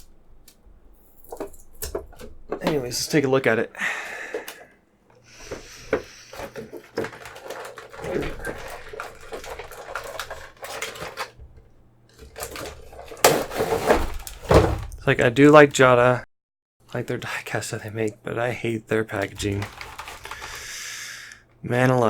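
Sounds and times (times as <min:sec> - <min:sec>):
clicks and knocks: 0:00.0 - 0:02.9
cardboard and plastic rustling: 0:00.0 - 0:03.1, 0:05.4 - 0:15.3, 0:19.1 - 0:20.9.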